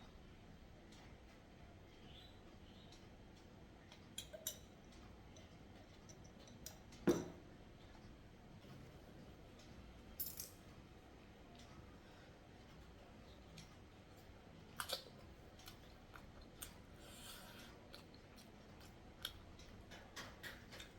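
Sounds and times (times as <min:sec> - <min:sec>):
dishes clicking and tapping: 0:03.9 - 0:07.5.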